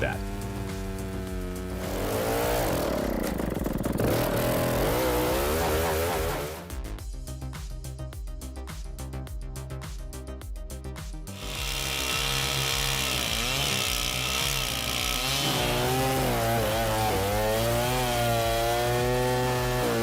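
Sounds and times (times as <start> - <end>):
chainsaw cutting through wood: 0.0 - 6.8, 11.3 - 20.0
music: 0.0 - 20.0.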